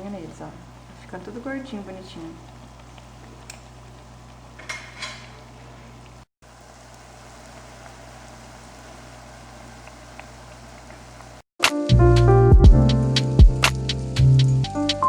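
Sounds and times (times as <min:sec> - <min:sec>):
oil sizzling while deep-frying: 0:00.0 - 0:11.4.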